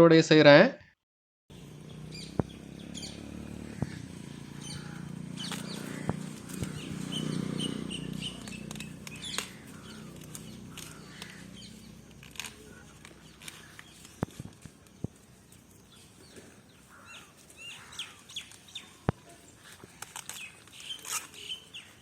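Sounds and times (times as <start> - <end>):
small birds chirping: 1.5 - 22.0
sharp clicks: 4.7 - 15.9, 19.8 - 21.7.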